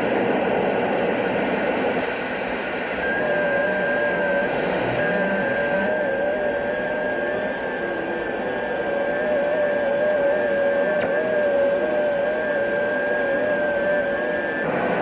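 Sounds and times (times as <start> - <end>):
radio band noise hiss: 0.0 - 9.4, 10.0 - 15.0
steady high whistle: 2.8 - 11.2.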